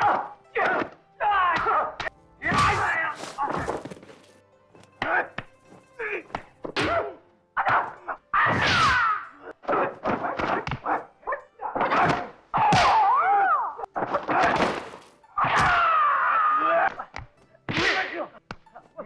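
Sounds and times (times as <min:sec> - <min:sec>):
shouted battle cries: 0:00.0 - 0:04.0, 0:06.0 - 0:14.8, 0:15.4 - 0:17.2
punch and kick impacts: 0:01.6 - 0:04.0, 0:11.9 - 0:13.1, 0:14.0 - 0:15.9.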